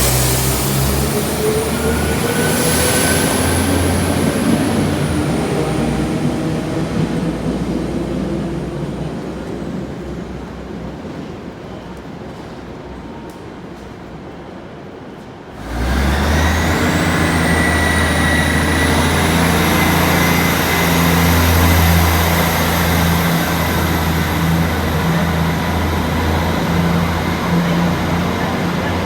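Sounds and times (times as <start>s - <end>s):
passing train drone: 0.0s - 29.0s
train high whine: 0.0s - 29.0s.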